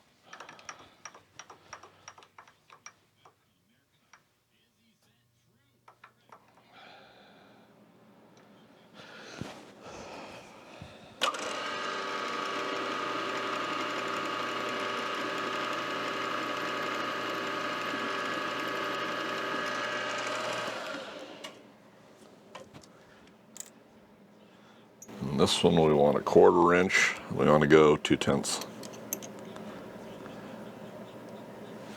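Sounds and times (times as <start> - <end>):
electric motor whine: 11.2 - 21.6.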